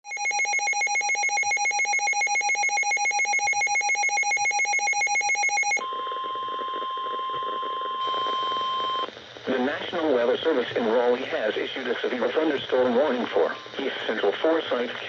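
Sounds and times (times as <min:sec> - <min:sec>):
steady alarm tone: 0:00.0 - 0:09.0.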